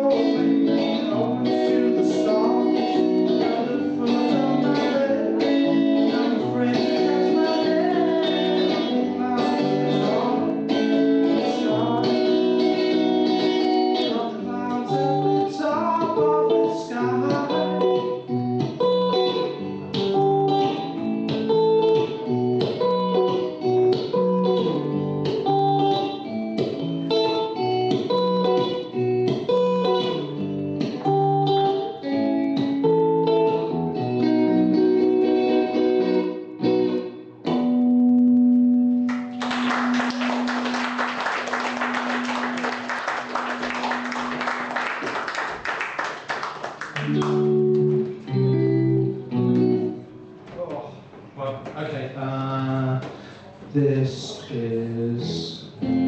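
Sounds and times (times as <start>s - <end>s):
guitar playing: 0.0s - 51.4s, 52.4s - 56.0s
audience applauding: 39.1s - 48.0s.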